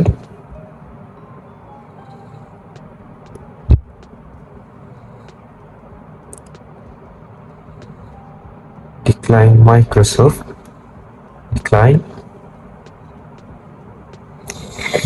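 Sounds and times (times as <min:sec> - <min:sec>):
low background noise: 0:00.0 - 0:15.0
faint clicks: 0:02.3 - 0:08.5.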